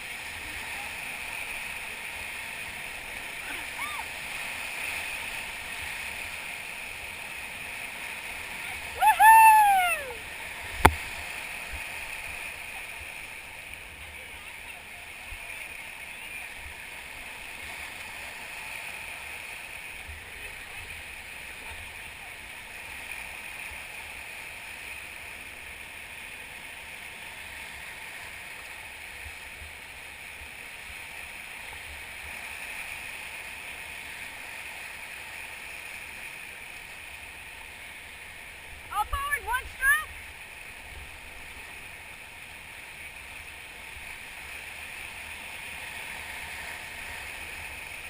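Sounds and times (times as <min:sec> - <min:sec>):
whitewater river rushing: 0:00.0 - 0:14.0.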